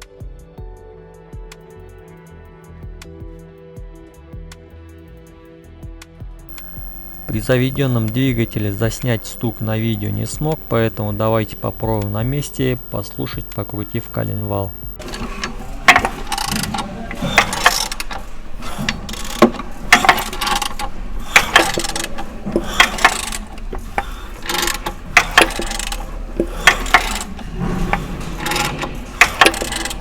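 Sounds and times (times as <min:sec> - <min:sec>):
metallic clicks and knocks: 0:06.5 - 0:30.0.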